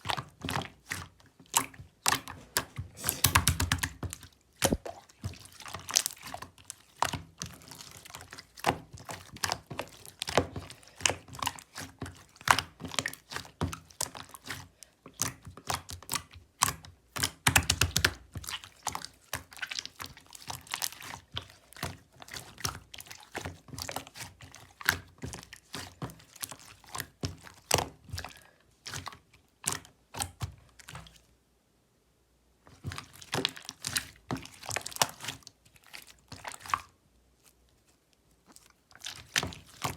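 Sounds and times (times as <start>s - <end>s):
slime squished by hand: 32.7s - 39.9s.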